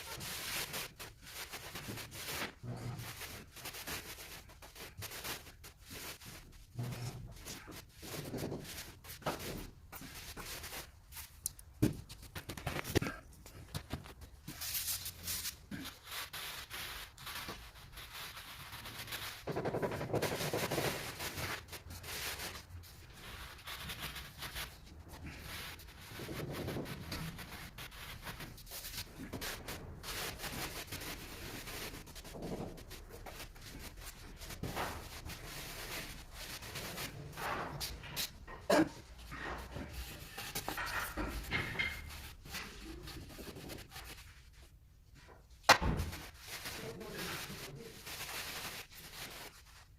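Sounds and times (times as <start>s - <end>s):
hand tools scraping floor: 28.8s - 43.2s.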